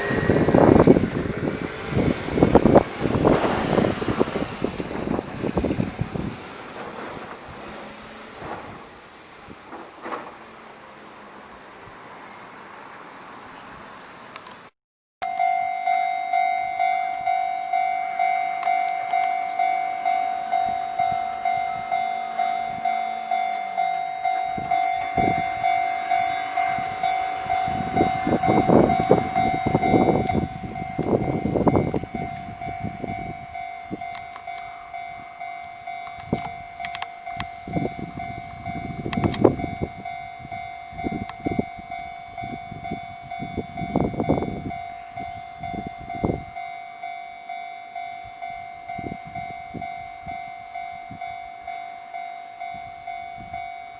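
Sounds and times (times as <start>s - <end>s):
train wheels clattering: 0.0s - 9.0s, 9.7s - 10.4s
level crossing bell ringing: 15.2s - 53.9s.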